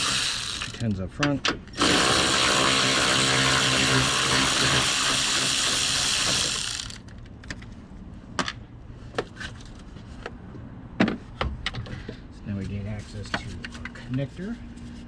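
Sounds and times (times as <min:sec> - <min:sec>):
power ratchet whirring: 0:00.0 - 0:00.9, 0:01.8 - 0:07.1.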